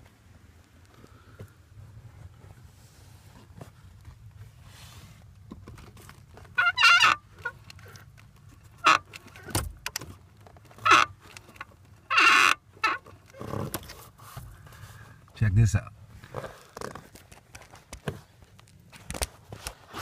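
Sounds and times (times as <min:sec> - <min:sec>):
clutch pedal squeaking: 0:06.3 - 0:14.0.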